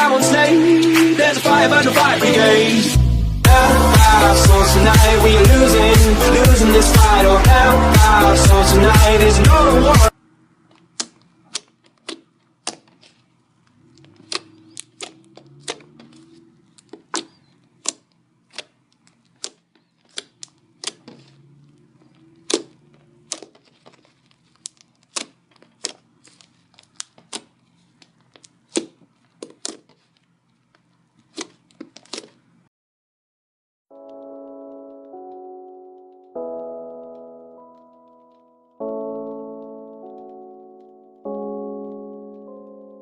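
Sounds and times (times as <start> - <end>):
slime clicking and popping: 10.7 - 13.2, 13.9 - 21.3, 22.1 - 30.1.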